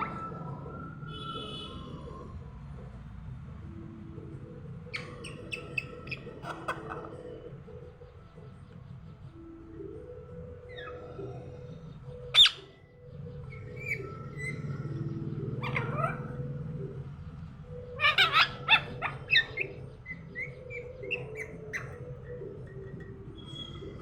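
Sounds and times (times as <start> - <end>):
parrot screeching and squawking: 4.9 - 7.3, 12.3 - 12.7, 13.5 - 16.4, 18.0 - 24.0.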